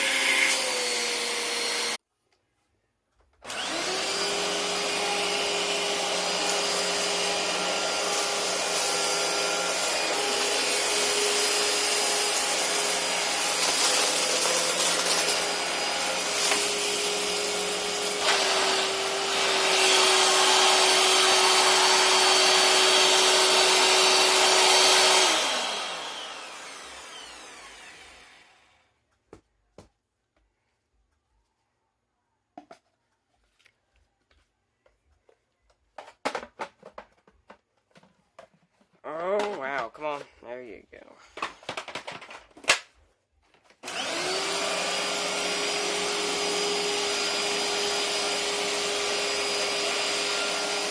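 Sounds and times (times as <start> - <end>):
vacuum cleaner motor whining: 0.0 - 2.0, 3.4 - 28.8, 43.8 - 50.9.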